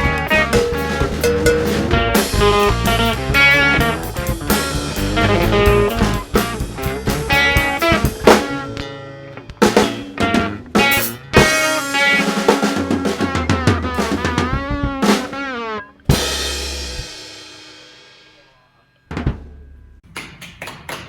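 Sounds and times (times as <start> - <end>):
strong drum hits: 0.0 - 6.6
band music with guitar and drums: 0.0 - 17.5.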